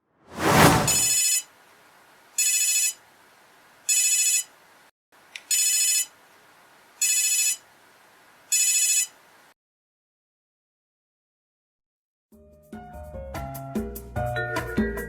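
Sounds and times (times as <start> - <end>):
electronic telephone ringtone: 2.4 - 3.0, 3.9 - 4.5, 5.5 - 6.1, 7.0 - 7.6, 8.5 - 9.2.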